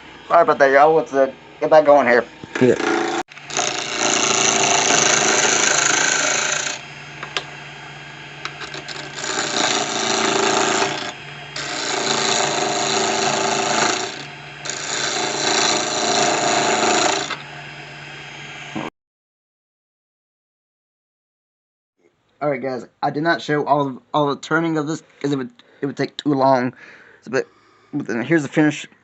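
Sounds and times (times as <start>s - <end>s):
turning tool cutting wood: 2.4s - 7.6s, 8.3s - 17.6s
wood lathe motor humming: 2.4s - 18.5s.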